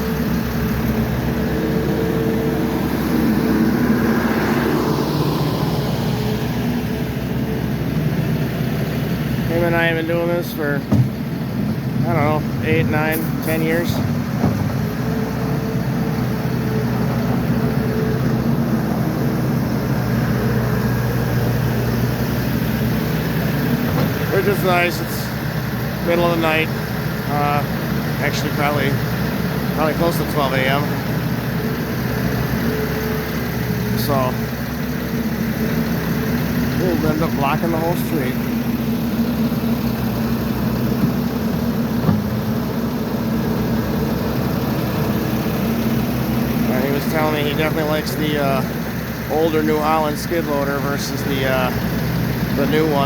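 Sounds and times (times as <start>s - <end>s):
diesel engine running steadily: 0.0s - 53.0s
short knock: 10.9s - 11.2s.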